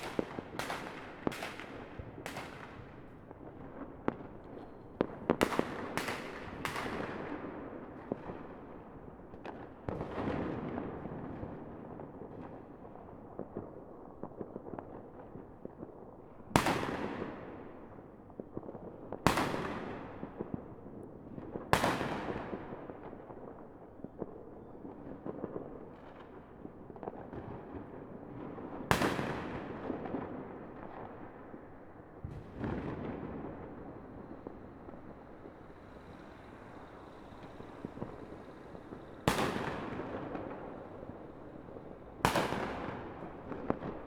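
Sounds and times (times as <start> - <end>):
loud firework bangs with echo: 0.0 - 12.5, 16.5 - 17.7, 19.3 - 20.7, 21.4 - 23.6, 24.9 - 44.0
firework pops and crackles: 0.0 - 44.0.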